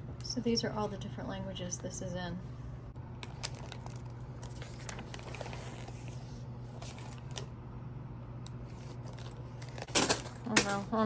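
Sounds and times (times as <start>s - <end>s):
steady low hum: 0.0s - 11.0s
clicks and rustling of objects: 3.2s - 6.2s.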